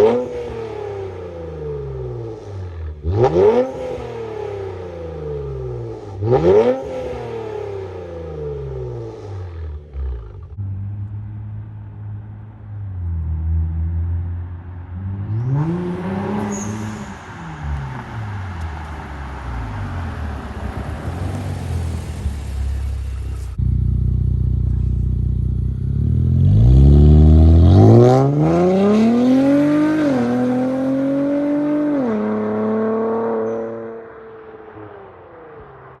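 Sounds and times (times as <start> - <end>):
car engine revving and accelerating: 0.0 - 36.0.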